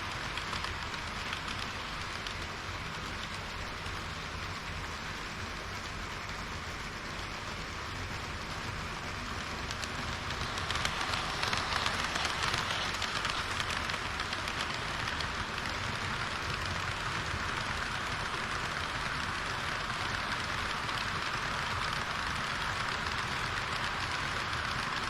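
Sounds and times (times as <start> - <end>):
model train wheels on rail: 0.0 - 25.0.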